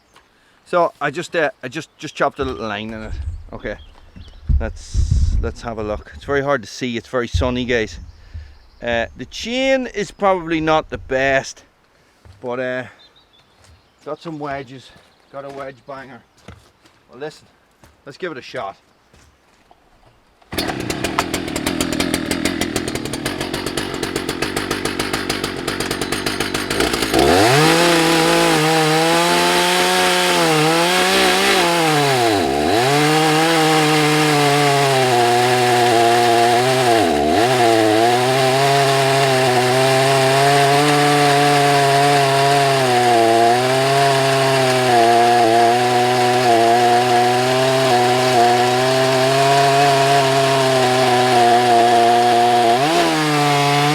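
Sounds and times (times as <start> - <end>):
chainsaw cutting into log: 2.4 - 6.4, 7.3 - 11.6, 20.5 - 53.9
chainsaw engine running: 2.4 - 6.4, 7.3 - 11.5, 20.5 - 53.9.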